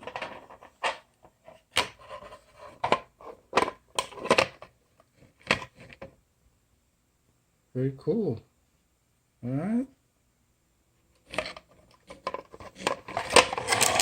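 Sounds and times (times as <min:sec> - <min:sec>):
plastic parts clicking and knocking: 0:00.0 - 0:06.2, 0:11.2 - 0:14.0.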